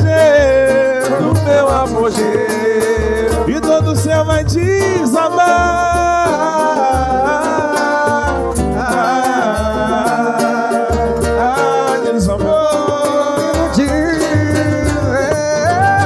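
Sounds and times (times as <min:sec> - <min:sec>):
pulsing bass line: 0:00.0 - 0:07.6, 0:08.2 - 0:10.2, 0:13.5 - 0:16.0
percussion strokes: 0:00.0 - 0:16.0.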